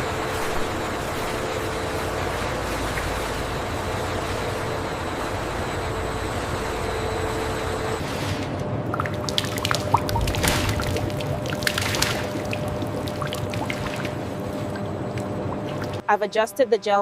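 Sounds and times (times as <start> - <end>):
faint hum: 0.0 - 17.0
liquid pouring and dripping: 8.9 - 16.0.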